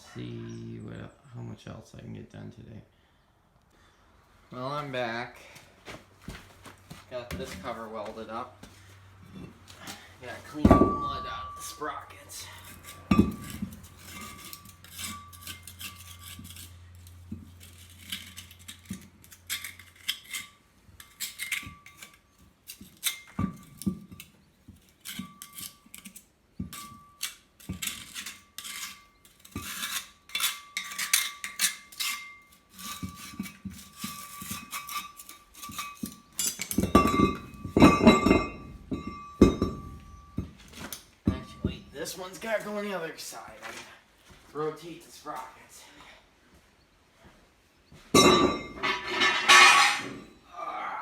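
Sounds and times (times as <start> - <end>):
heavy metal clanks and thumps: 9.2 - 15.4, 35.6 - 42.0, 48.1 - 50.4
metal tool scraping metal sprocket: 10.9 - 42.5, 48.2 - 50.4.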